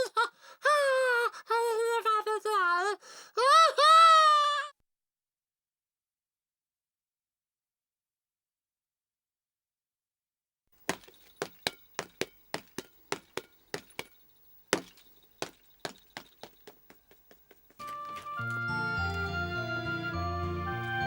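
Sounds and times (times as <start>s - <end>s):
sharp clinking taps: 10.9s - 14.2s, 14.8s - 17.8s.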